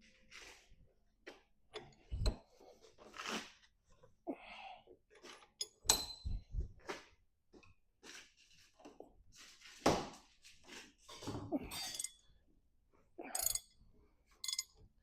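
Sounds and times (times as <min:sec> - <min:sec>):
ringing metal clinks: 0:13.3 - 0:13.7, 0:14.4 - 0:14.8
wrench knocks and strained metal: 0:13.3 - 0:14.9.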